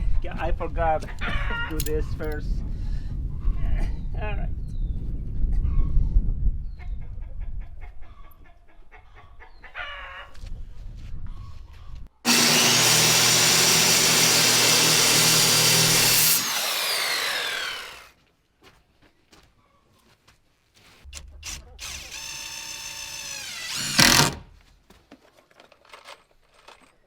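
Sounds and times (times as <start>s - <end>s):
electric saw cutting wood: 12.3s - 18.1s, 21.4s - 24.5s.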